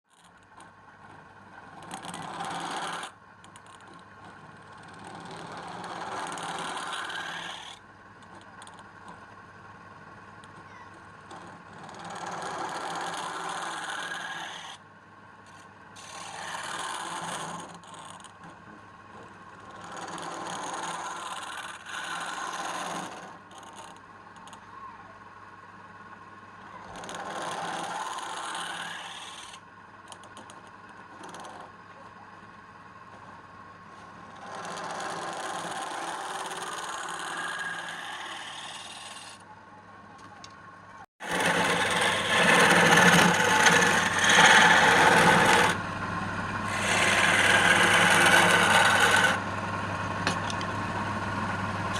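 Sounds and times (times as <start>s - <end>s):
wood lathe humming: 5.0s - 7.8s, 11.3s - 14.8s, 16.0s - 18.5s, 19.6s - 23.4s, 26.9s - 29.6s, 34.3s - 39.4s, 41.2s - 51.9s
scraping hiss on spinning wood: 27.4s - 29.6s, 34.7s - 39.4s.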